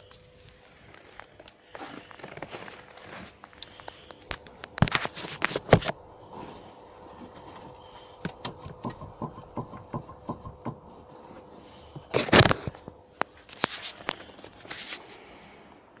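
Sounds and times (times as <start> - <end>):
struts knocking: 8.2 - 11.0.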